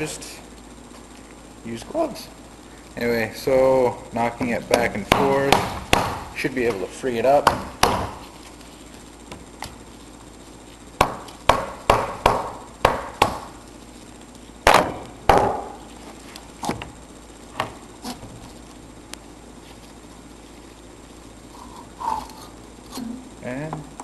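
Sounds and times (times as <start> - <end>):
hammer striking engine part: 5.1 - 6.2.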